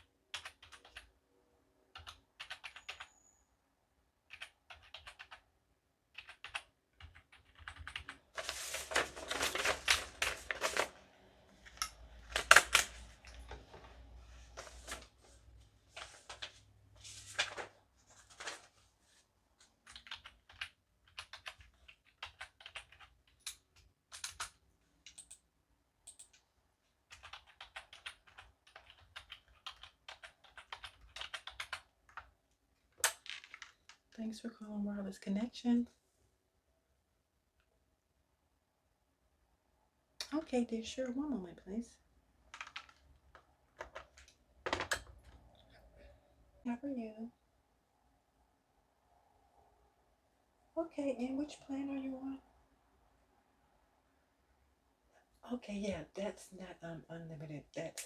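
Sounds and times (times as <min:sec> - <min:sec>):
typing on computer keyboard: 0:00.0 - 0:01.1, 0:01.9 - 0:03.2, 0:04.3 - 0:05.4, 0:06.1 - 0:08.2, 0:19.8 - 0:26.4, 0:27.0 - 0:32.4, 0:42.5 - 0:45.4.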